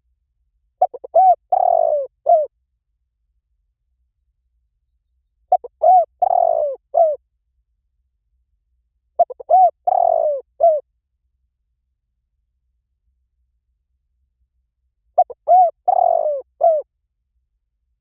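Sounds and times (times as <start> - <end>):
dove cooing: 0.8 - 2.5, 5.5 - 7.2, 9.2 - 10.8, 15.2 - 16.9.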